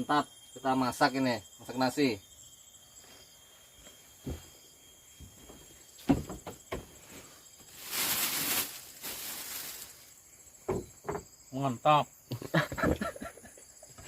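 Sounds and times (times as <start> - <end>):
cooking hiss: 7.0 - 11.4
light knocks: 10.6 - 11.3.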